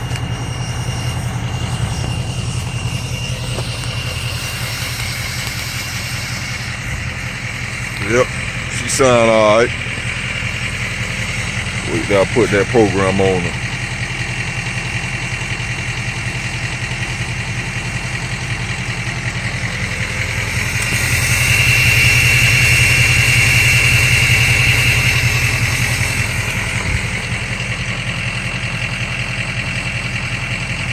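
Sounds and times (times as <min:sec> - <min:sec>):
turbo whistle: 0:00.0 - 0:13.3, 0:17.2 - 0:28.4
diesel engine idling and revving: 0:00.0 - 0:30.9.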